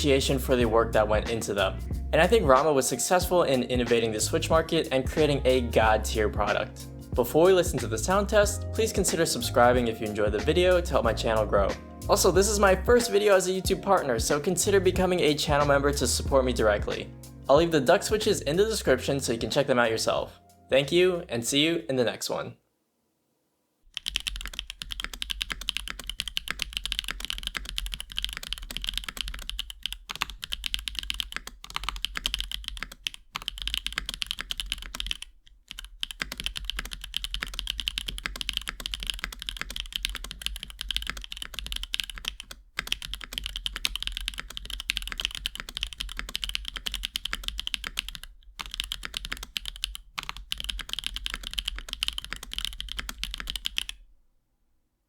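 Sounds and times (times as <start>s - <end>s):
mechanical keyboard keystrokes: 24.0s - 54.0s.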